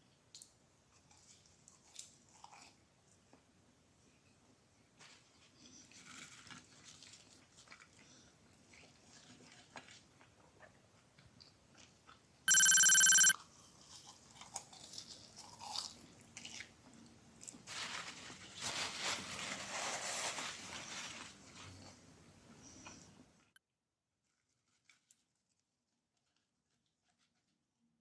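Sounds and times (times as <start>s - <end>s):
quiet chewing: 0.3s - 3.4s, 5.9s - 12.3s
loud electronic beep: 12.5s - 13.3s.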